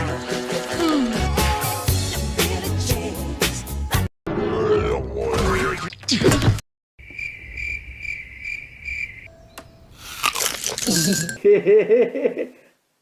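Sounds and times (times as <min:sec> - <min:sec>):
cricket chirping: 0:07.0 - 0:11.1.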